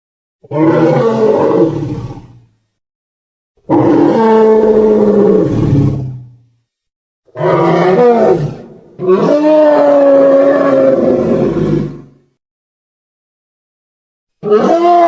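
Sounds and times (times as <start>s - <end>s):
animal roars: 0.4s - 2.4s, 3.6s - 6.4s, 7.3s - 12.3s, 14.4s - 15.0s.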